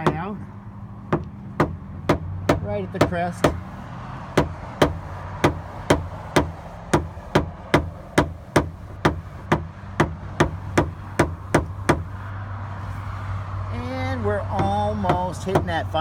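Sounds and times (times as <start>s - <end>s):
tool tapping on sheet metal: 1.1s - 3.7s, 4.4s - 12.1s, 14.5s - 15.8s.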